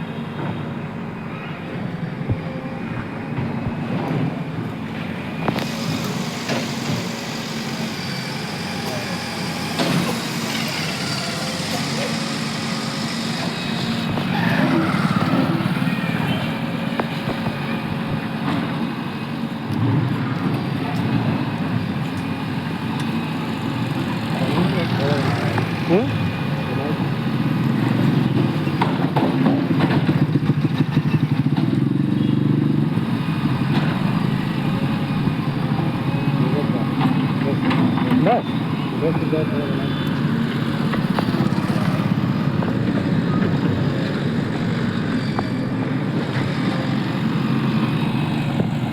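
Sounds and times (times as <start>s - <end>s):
bulldozer diesel engine running: 0.0s - 48.9s
people's voices: 1.2s - 17.4s, 24.1s - 27.3s, 33.2s - 48.9s.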